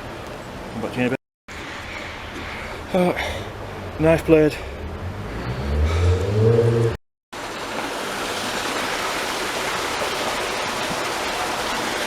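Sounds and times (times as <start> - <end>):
running water: 7.4 - 12.0.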